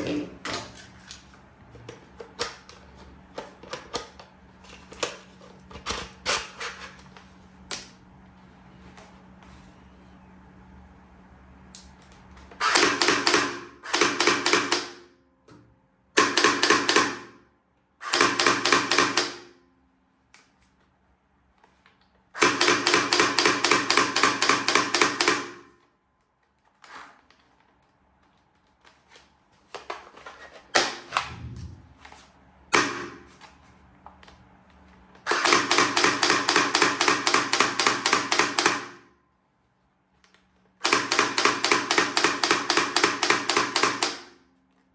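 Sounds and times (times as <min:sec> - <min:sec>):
toy gun firing rattling clicks: 0:35.3 - 0:38.9, 0:40.8 - 0:44.3.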